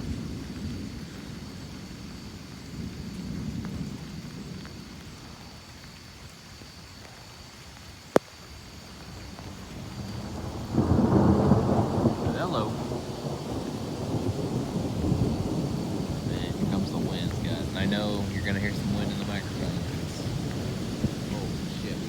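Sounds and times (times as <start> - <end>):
rain falling: 0.0 - 22.0
thunder rumbling: 9.4 - 22.0.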